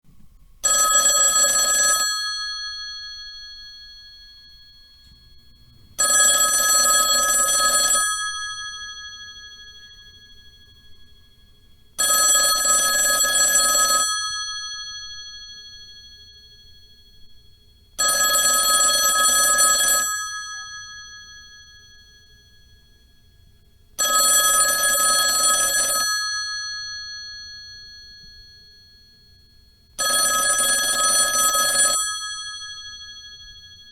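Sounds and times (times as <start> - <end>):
telephone ringing: 0.6 - 11.0, 12.0 - 16.9, 18.0 - 22.5, 24.0 - 33.9.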